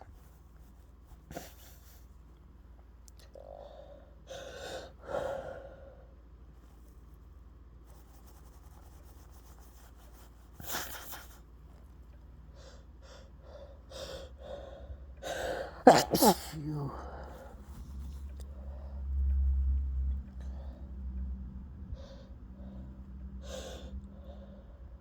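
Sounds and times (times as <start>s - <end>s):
person gasping before sneeze: 15.8s - 17.1s.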